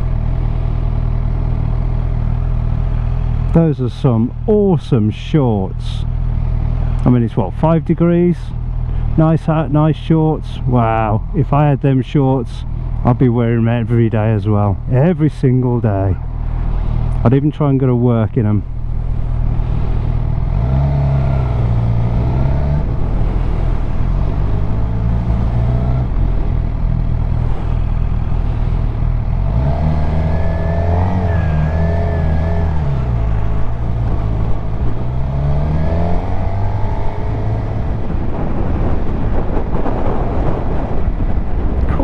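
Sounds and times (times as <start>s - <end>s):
motorcycle engine revving: 0.0s - 41.3s
wind noise: 19.1s - 42.0s.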